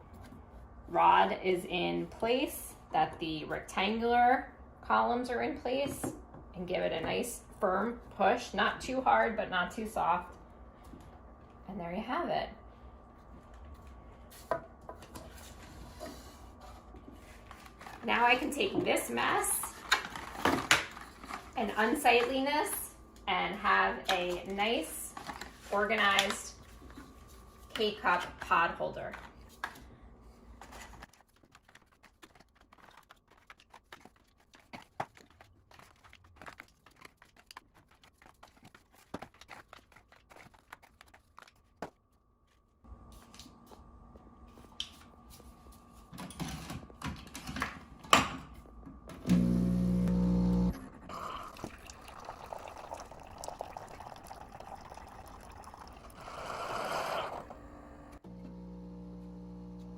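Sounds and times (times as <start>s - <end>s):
liquid trickling and pouring: 51.1s - 57.6s.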